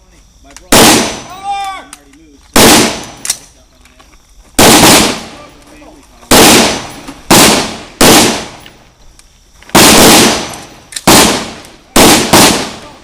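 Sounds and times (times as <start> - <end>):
rifle shots: 0.7 - 1.3, 2.6 - 3.4, 4.6 - 5.4, 6.3 - 8.7, 9.7 - 13.0.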